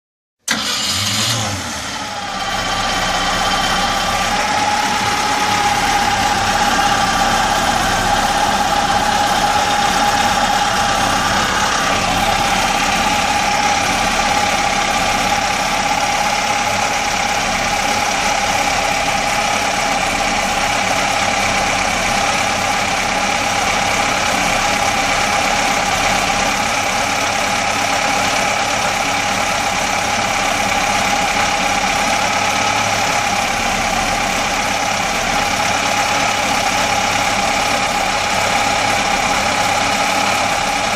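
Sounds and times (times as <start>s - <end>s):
constant whine: 1.9s - 40.9s.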